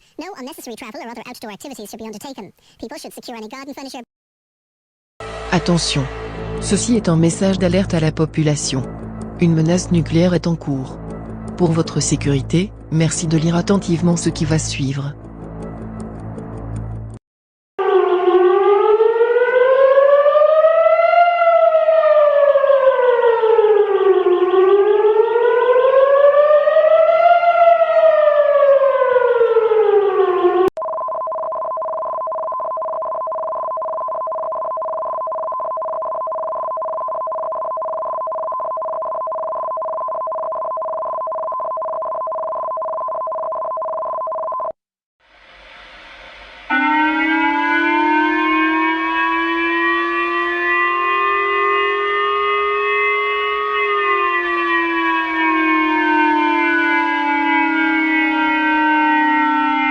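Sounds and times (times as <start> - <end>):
siren wailing: 5.2 - 8.8, 17.8 - 30.7, 46.7 - 59.9.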